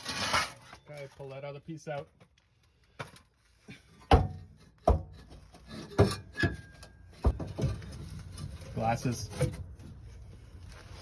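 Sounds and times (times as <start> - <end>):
exhaust pipe pieces knocking: 4.0 - 10.0.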